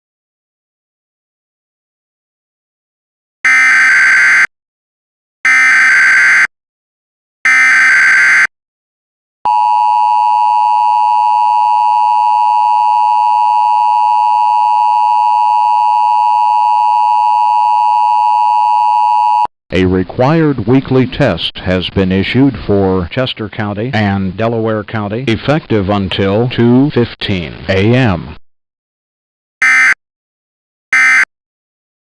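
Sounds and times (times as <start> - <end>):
two-tone attention signal: 29.6 - 30.0, 31.0 - 31.3.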